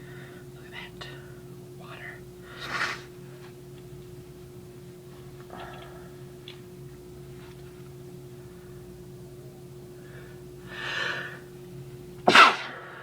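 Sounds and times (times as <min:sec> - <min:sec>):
person breathing in: 0:10.0 - 0:11.5
person sneezing loudly: 0:12.3 - 0:12.8.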